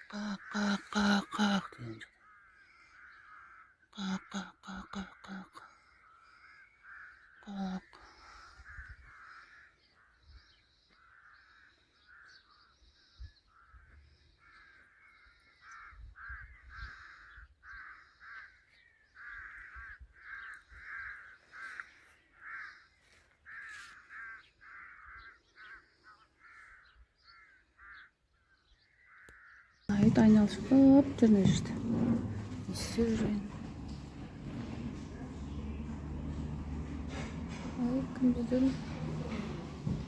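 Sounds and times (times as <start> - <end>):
crow cawing: 0.0 - 7.6, 8.6 - 10.2, 13.5 - 35.9.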